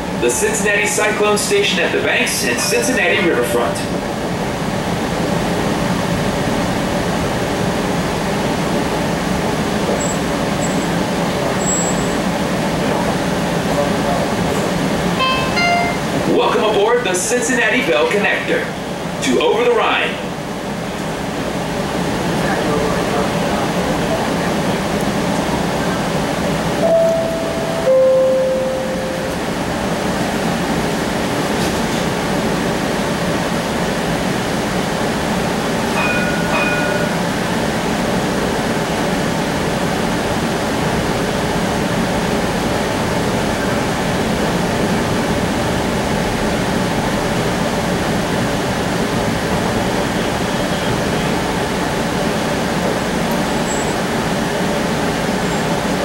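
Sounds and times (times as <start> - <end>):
streetcar rumble and hum: 0.0 - 56.0
short high beeps: 15.2 - 16.1
two-note falling chime: 15.2 - 16.1, 26.8 - 29.4.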